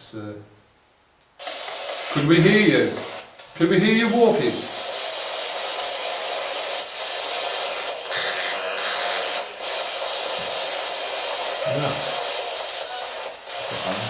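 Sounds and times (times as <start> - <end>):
radio static hissing: 3.9 - 14.0.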